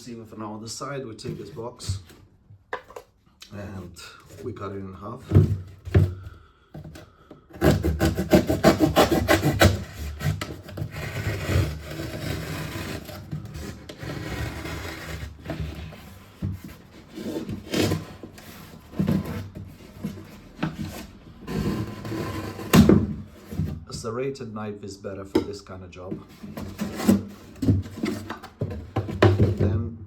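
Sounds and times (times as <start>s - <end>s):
knife sawing through cardboard: 7.5s - 23.8s, 26.3s - 28.5s.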